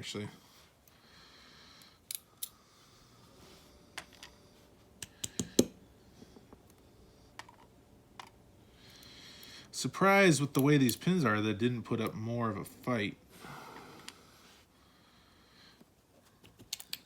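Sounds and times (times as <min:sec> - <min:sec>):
small lock pins clicking: 0:16.5 - 0:17.0.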